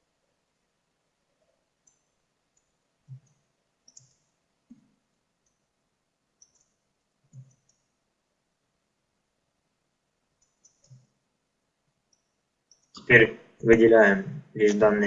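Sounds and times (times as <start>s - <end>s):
computer mouse clicking: 1.8s - 5.6s, 6.4s - 7.9s, 10.4s - 11.2s, 12.1s - 13.1s.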